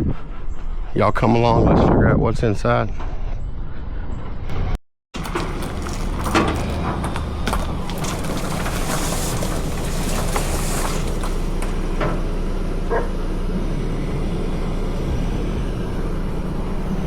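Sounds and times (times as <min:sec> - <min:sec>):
vehicle engine humming: 0:05.2 - 0:17.0.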